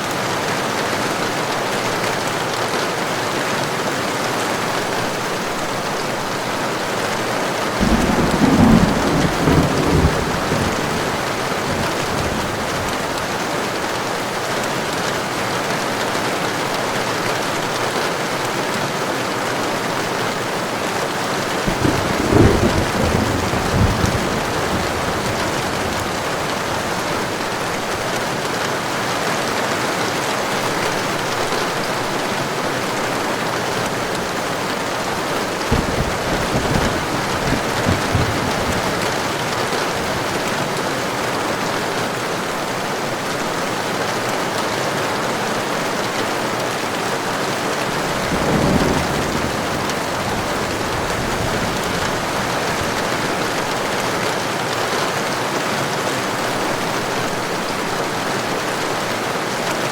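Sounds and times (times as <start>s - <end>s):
heavy rain falling: 0.0s - 59.9s
thunder rumbling: 7.6s - 13.8s, 21.5s - 28.2s, 35.1s - 41.1s, 47.7s - 54.2s.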